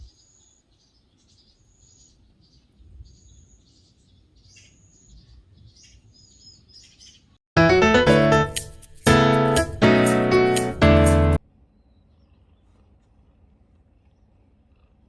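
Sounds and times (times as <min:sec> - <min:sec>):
bird chirps: 0:00.0 - 0:07.3.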